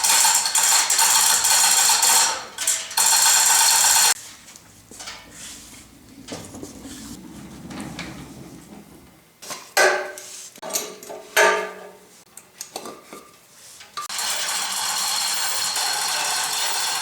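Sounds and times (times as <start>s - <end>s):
steady mechanical noise: 0.0s - 9.5s, 14.0s - 17.0s.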